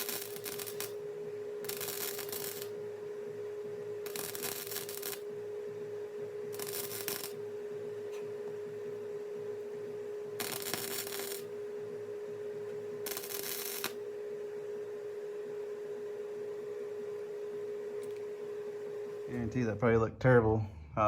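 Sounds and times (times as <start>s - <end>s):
welding arc crackle: 0.0s - 1.0s, 1.6s - 2.9s, 4.0s - 5.3s, 6.5s - 7.5s, 10.3s - 11.6s, 12.6s - 14.1s
steady hum: 0.0s - 21.0s.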